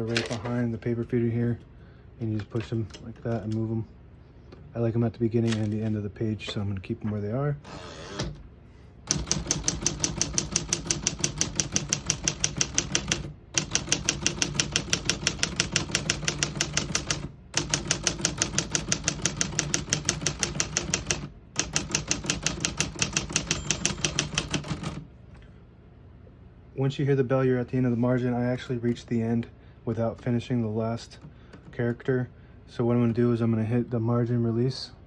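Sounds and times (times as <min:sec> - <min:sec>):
typewriter keys clattering: 0:09.1 - 0:25.0.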